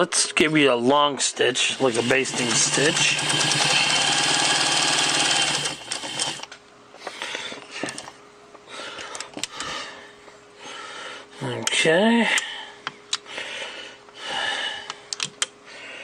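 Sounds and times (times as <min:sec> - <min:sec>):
faint steady hum: 0:00.0 - 0:16.0
sewing machine stitching: 0:01.5 - 0:06.5.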